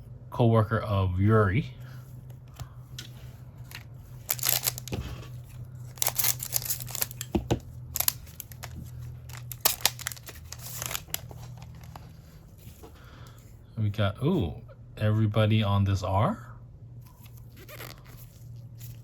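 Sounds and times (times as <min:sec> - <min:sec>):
plastic wrapper crinkling and tearing: 0:03.6 - 0:12.3, 0:17.2 - 0:19.0.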